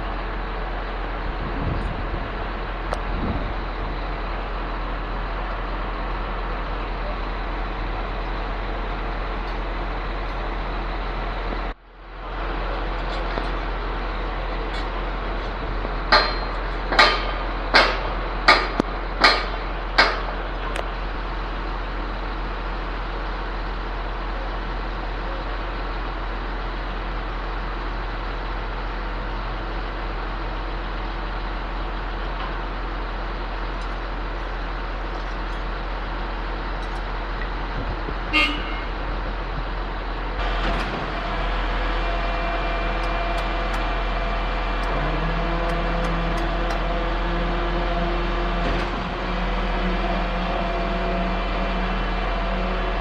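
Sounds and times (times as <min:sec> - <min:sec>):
concrete pump engine drone: 0:00.0 - 0:53.0
sharp metallic knocks: 0:16.1 - 0:20.4.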